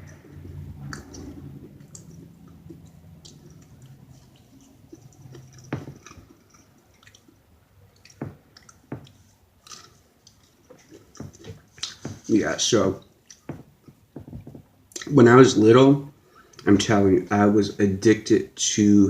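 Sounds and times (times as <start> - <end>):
sharp mouth clicks: 0.0 - 7.4, 8.0 - 12.2
close-miked chewing: 0.0 - 12.3, 13.0 - 14.1.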